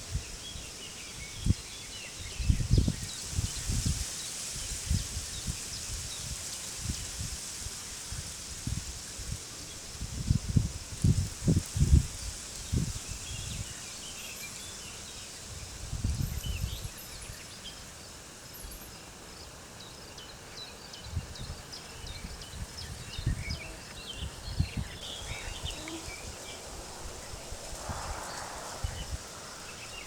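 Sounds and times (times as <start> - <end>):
wind rumbling in gusts: 0.0 - 17.6, 20.8 - 30.0
steady high hiss: 0.0 - 30.0
birds chirping: 18.6 - 30.0.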